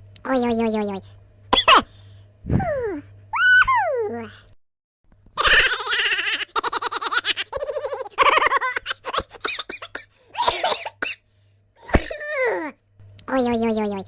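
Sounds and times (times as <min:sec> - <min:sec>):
high rapid giggling laugh: 0:05.4 - 0:10.5.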